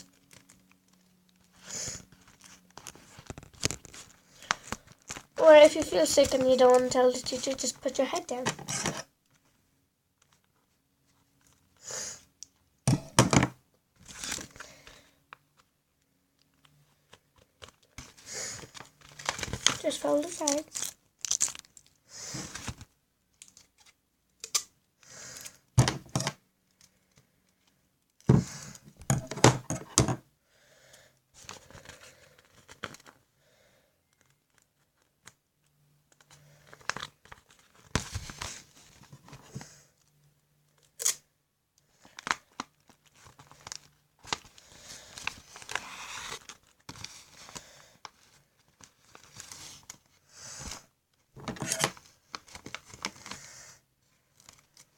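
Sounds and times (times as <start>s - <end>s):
paper crinkling: 0.0s - 8.4s, 14.0s - 14.9s, 16.4s - 24.0s, 34.1s - 39.6s, 42.0s - 50.1s, 51.6s - 53.4s, 54.2s - 54.9s
tape tearing: 18.7s - 21.9s.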